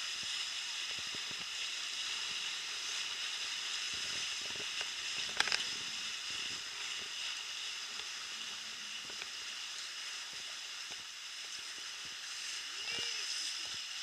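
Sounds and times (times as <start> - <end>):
crackle of clicks: 4.4 - 5.8, 9.0 - 9.9.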